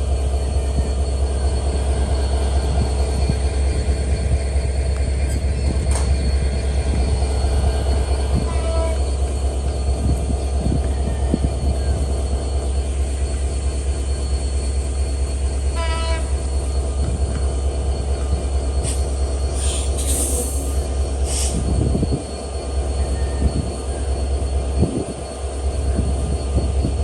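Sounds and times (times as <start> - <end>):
train rumbling: 0.0 - 27.0
hissing screeching bursts: 18.8 - 21.8.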